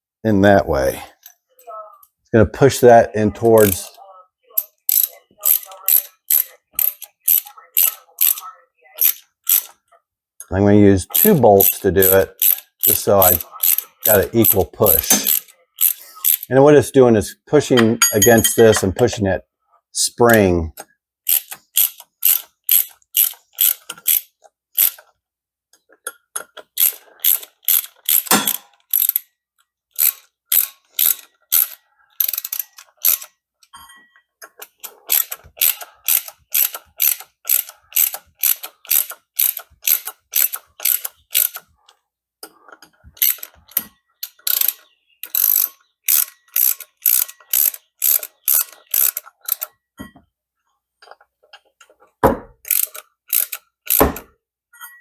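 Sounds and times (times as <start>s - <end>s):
ratchet wrench clicking: 4.6s - 8.4s, 9.0s - 9.8s, 11.1s - 16.5s, 21.3s - 25.1s, 26.4s - 29.3s, 30.0s - 33.4s, 35.1s - 41.6s, 43.2s - 49.7s, 52.6s - 54.2s.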